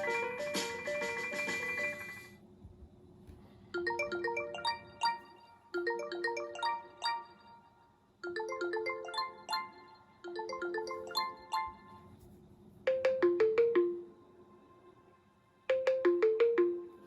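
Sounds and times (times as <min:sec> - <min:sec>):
ringtone falling notes: 0:00.0 - 0:02.3, 0:03.8 - 0:12.1, 0:12.9 - 0:14.2, 0:15.7 - 0:17.0
ringtone rising notes: 0:00.0 - 0:02.3, 0:03.8 - 0:12.1, 0:12.9 - 0:14.2, 0:15.7 - 0:17.0.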